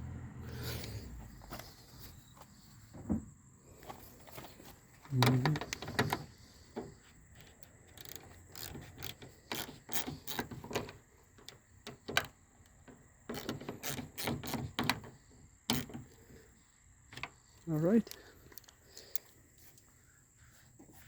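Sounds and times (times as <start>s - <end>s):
ratchet clicking: 7.4s - 15.1s, 15.7s - 16.2s.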